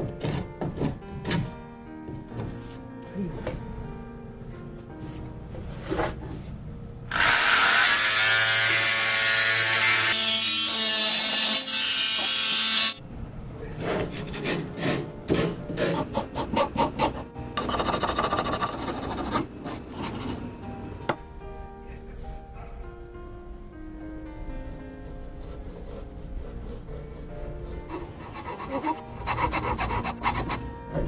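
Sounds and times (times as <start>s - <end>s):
power tool cutting wood: 7.1s - 13.0s.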